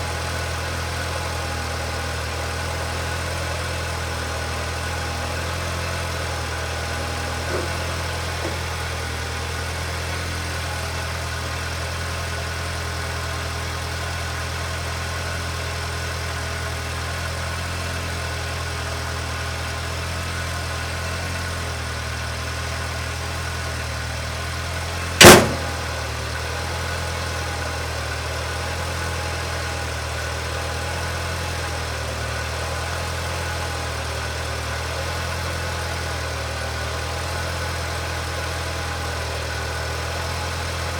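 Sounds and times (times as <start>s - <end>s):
engine idling: 0.0s - 15.1s, 25.2s - 26.4s
loud sharp knock: 25.2s - 26.1s.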